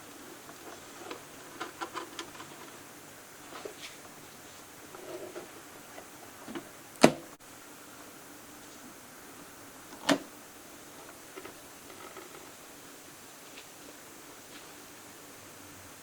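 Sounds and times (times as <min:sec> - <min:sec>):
faint handling rustles: 0:00.0 - 0:06.7, 0:13.4 - 0:14.8.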